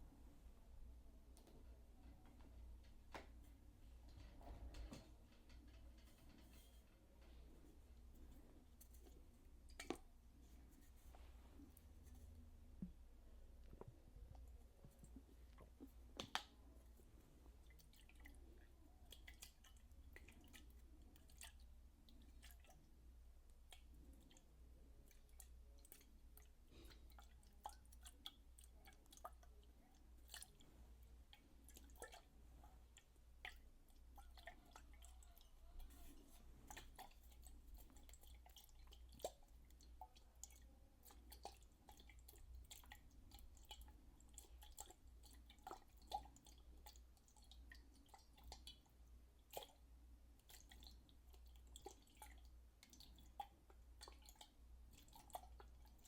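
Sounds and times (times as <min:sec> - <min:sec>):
water dripping: 0:12.1 - 0:56.0.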